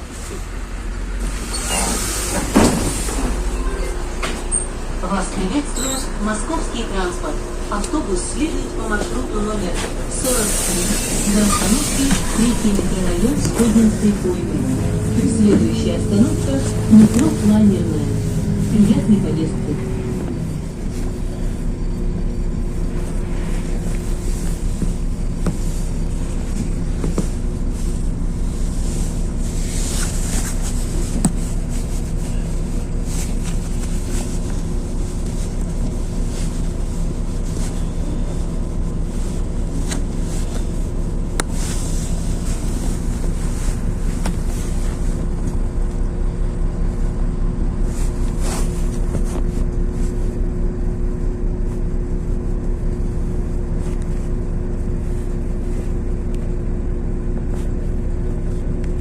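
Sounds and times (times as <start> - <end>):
bus engine drone: 0.0 - 59.0
road rumble: 0.0 - 59.0
steady whining tone: 11.3 - 25.4.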